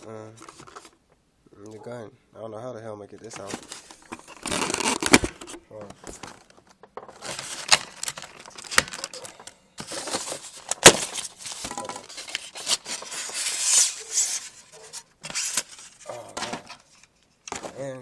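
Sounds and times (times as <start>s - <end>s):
packaging rustling and tearing: 3.2s - 16.9s.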